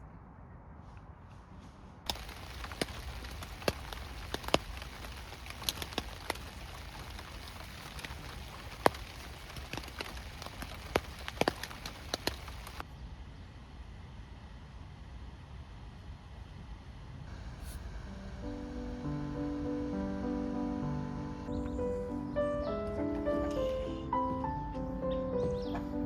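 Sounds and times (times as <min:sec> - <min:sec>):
heavy raindrops ticking: 0:02.1 - 0:12.8
rain hissing: 0:02.1 - 0:12.8, 0:17.2 - 0:23.9.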